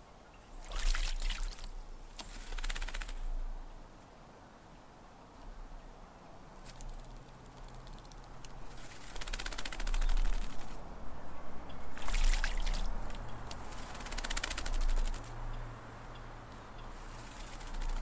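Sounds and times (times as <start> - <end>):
bird splashing in water: 0.5 - 3.2, 11.8 - 15.2
rapid wing fluttering: 0.6 - 3.4, 6.7 - 10.9, 11.9 - 15.4, 17.0 - 18.0.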